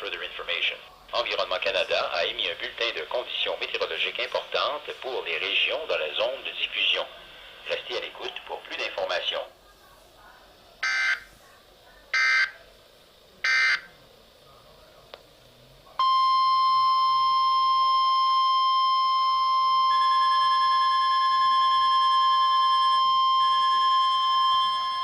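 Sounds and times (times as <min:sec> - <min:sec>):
steady single-pitch alert tone: 0:10.8 - 0:11.2, 0:16.0 - 0:25.0
screeching data bursts: 0:10.8 - 0:11.3, 0:19.1 - 0:25.0.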